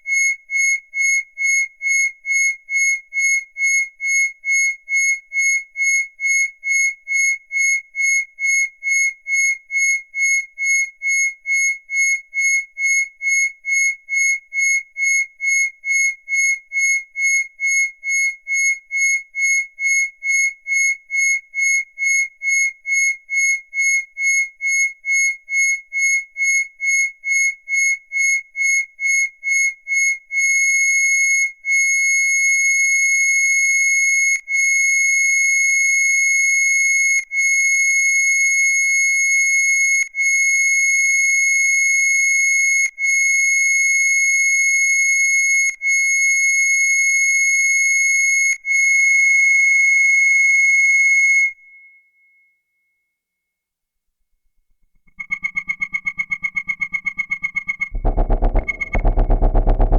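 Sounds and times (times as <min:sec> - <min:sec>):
high-pitched synthesizer tone: 0:55.2 - 0:59.9.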